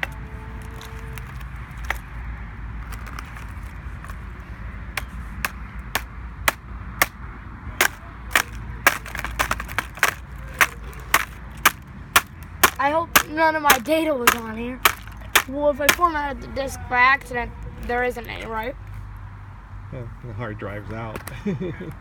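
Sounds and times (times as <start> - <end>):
sharp blows smashing a laptop: 7.8 - 16.1.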